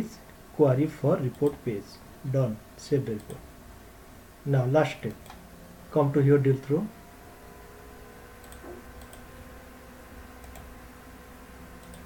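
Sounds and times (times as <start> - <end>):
low room hum: 0.0 - 12.0
computer mouse clicking: 1.3 - 1.6, 3.2 - 3.4, 8.4 - 9.4, 10.4 - 10.7, 11.8 - 12.0.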